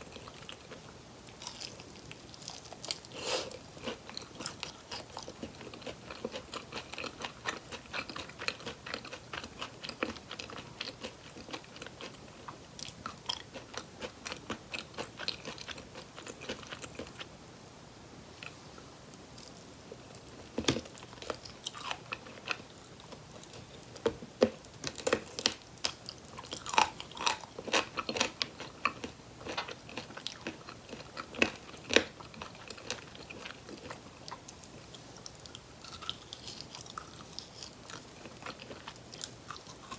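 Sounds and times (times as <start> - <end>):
chewing: 0.1 - 17.3, 19.4 - 39.9.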